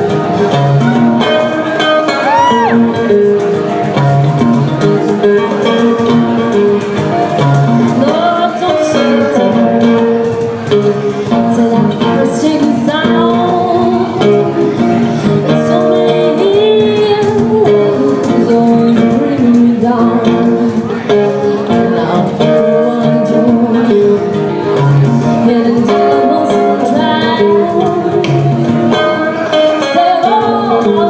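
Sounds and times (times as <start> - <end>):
acoustic guitar playing: 0.0 - 31.0
person singing: 7.4 - 31.0.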